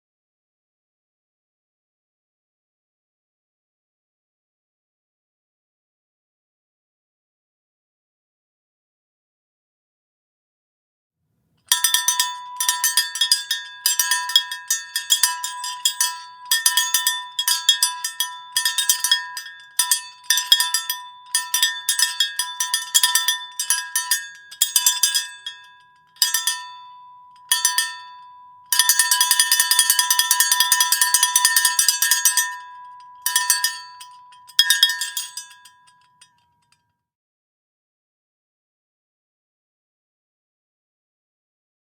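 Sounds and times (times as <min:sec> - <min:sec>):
cowbell clanking: 0:11.7 - 0:36.5.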